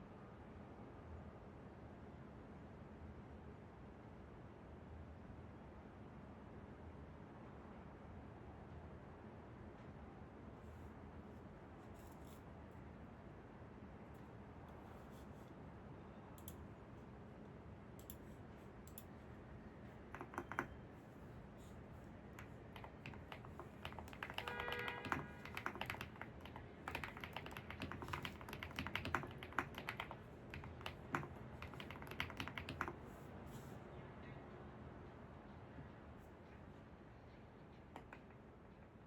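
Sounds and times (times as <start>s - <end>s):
typing on computer keyboard: 20.0s - 20.8s, 22.4s - 33.2s, 38.0s - 38.4s.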